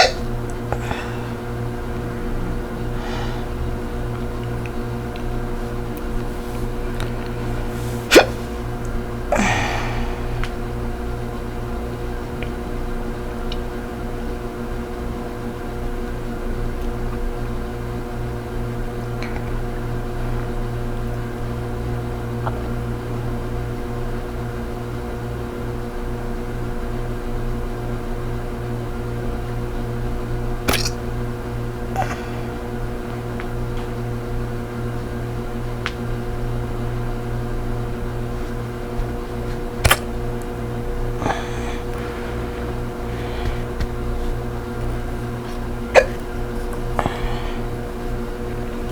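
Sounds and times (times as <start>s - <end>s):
woman hiccupping: 0.0s - 1.4s, 7.2s - 10.6s, 30.7s - 31.0s, 31.9s - 32.7s, 41.2s - 42.2s, 45.9s - 47.6s
steady mechanical hum: 0.0s - 48.9s.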